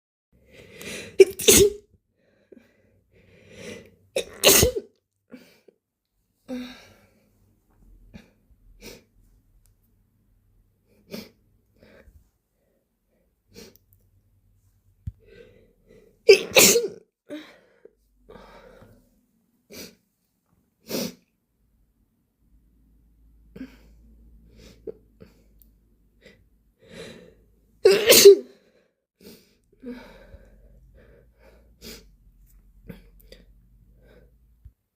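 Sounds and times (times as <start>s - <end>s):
person sneezing wetly: 0.9s - 1.8s, 4.2s - 4.8s, 16.3s - 17.0s, 27.8s - 28.5s.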